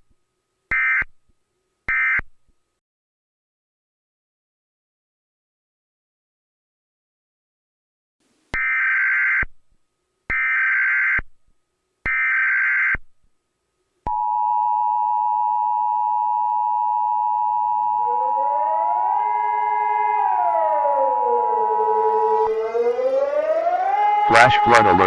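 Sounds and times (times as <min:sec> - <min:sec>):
two-tone attention signal: 0:14.1 - 0:25.0
siren wail: 0:17.0 - 0:25.0.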